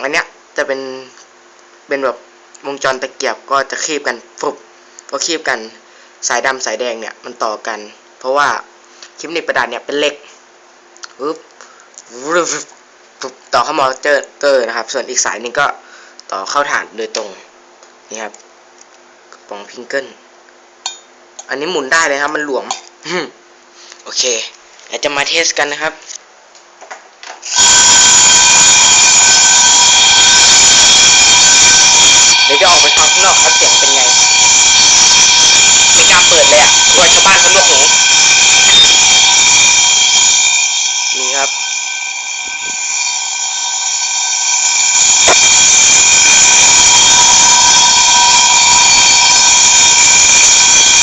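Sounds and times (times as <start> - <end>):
shrill continuous alarm buzz: 27.4 - 51.0.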